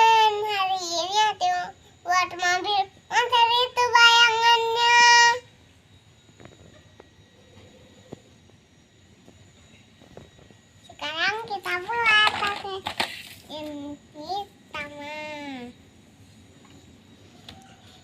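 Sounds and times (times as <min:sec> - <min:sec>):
child singing: 0:00.0 - 0:05.5, 0:10.9 - 0:15.7.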